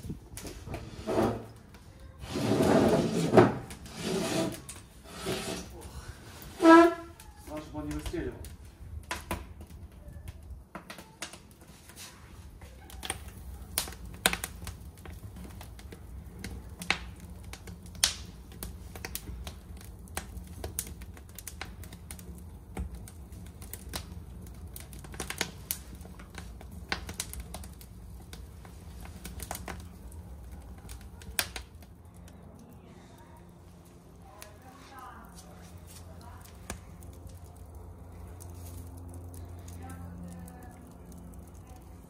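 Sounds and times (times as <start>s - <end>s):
wood fire crackling: 0.0s - 42.0s
low hum: 19.4s - 42.0s.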